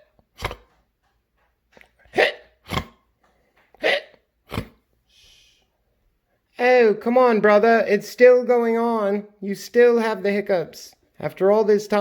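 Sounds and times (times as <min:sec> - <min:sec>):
person hiccuping: 0:00.4 - 0:00.7, 0:02.1 - 0:03.0, 0:03.8 - 0:04.8.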